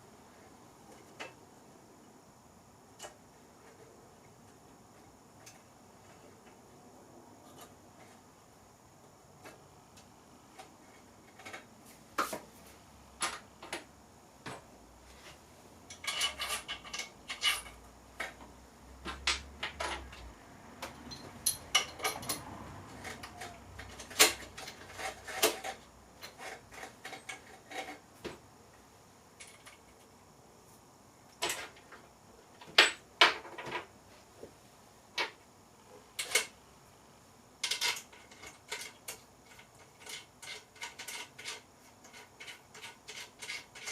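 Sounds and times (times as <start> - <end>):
metallic clicks and clinks: 19.2 - 25.8.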